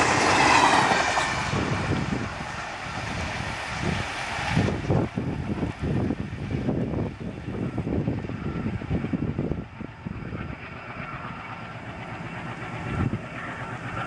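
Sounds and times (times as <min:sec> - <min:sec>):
train wheels clattering over rails: 0:00.0 - 0:03.4.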